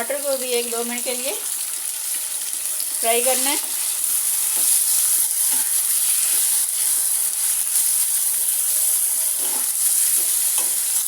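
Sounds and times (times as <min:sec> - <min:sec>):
tomatoes sizzling in hot oil: 0:00.0 - 0:11.0.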